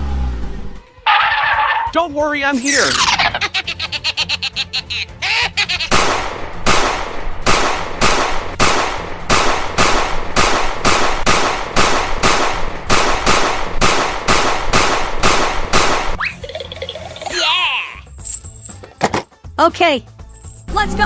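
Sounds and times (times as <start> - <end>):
sharp bangs: 5.9 - 16.2.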